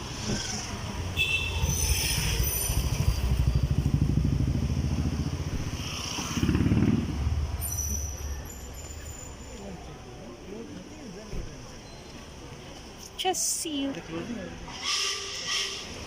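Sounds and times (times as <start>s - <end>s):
street traffic: 0.0s - 16.0s
motorbike engine running: 2.7s - 5.5s.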